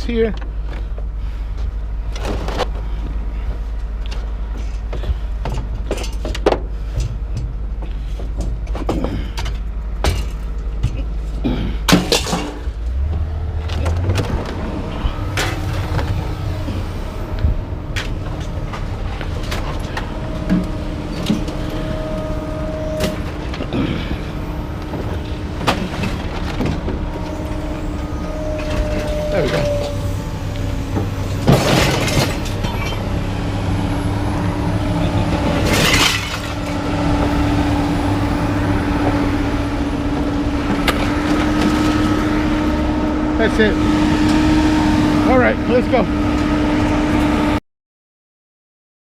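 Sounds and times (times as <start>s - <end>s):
vehicle engine running: 0.0s - 47.6s
metal clanks and knocks: 4.0s - 23.8s, 28.3s - 33.1s.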